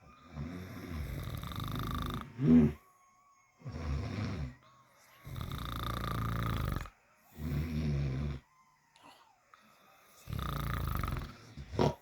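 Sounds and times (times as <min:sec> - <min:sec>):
loud snoring: 0:00.2 - 0:02.8, 0:03.6 - 0:04.6, 0:05.2 - 0:08.4, 0:10.2 - 0:12.0.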